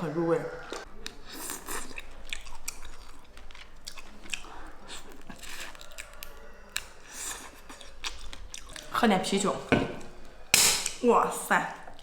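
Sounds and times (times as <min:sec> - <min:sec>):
person chewing: 0:00.6 - 0:09.0.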